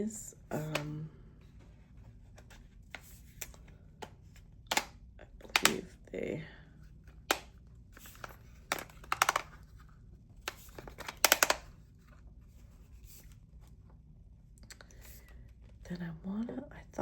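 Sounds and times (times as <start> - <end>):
plastic light clicking and rustling: 3.3 - 5.9, 7.3 - 9.7, 10.4 - 11.7.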